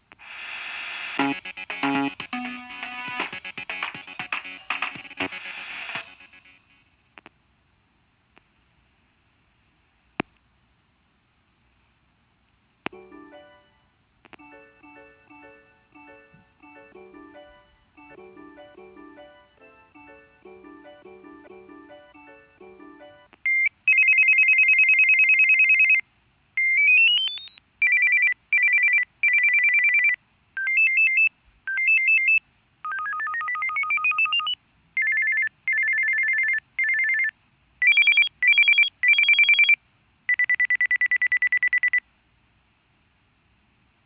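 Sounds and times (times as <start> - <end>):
electronic beep ringtones: 1.2 - 3.3, 26.6 - 27.6
phone ringtone melody: 1.2 - 6.4, 13.0 - 13.8, 14.4 - 23.3, 23.9 - 26.0, 26.8 - 39.8.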